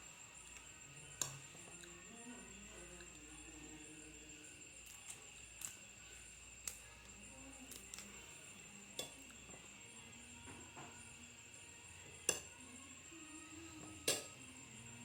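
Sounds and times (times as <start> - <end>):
crickets chirring: 0.0 - 15.0.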